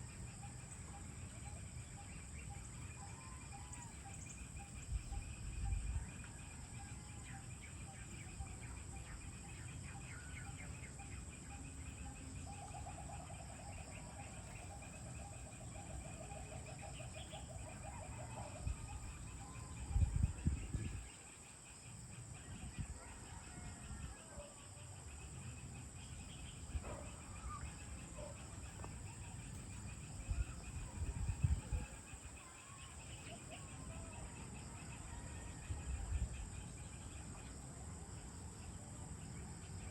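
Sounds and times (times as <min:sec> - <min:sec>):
insects chirping: 0:00.0 - 0:39.9
birds calling: 0:25.6 - 0:33.9.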